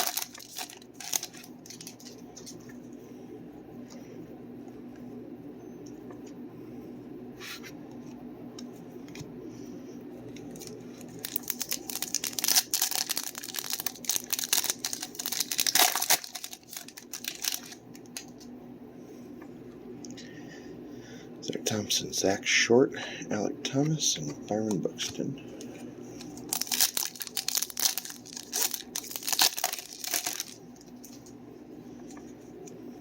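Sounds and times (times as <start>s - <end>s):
foil wrapper crinkling: 0.0s - 2.7s, 10.5s - 18.4s, 26.2s - 31.3s.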